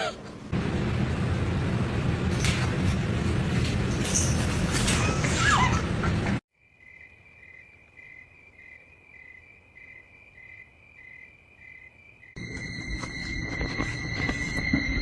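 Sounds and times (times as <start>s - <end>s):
insect chirping: 6.5s - 12.4s.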